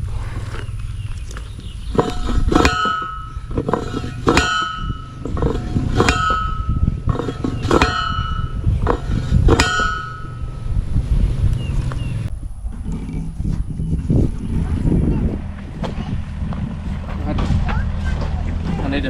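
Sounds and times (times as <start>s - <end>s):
post driver metallic clangs: 1.9s - 10.8s.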